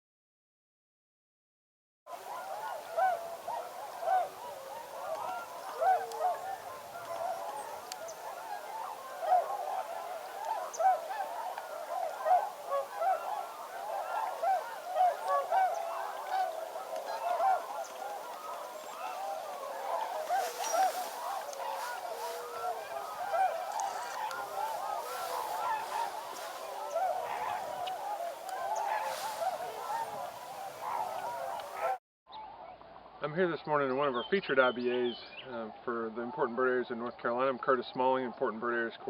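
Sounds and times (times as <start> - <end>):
geese and swans honking: 2.1 - 32.0.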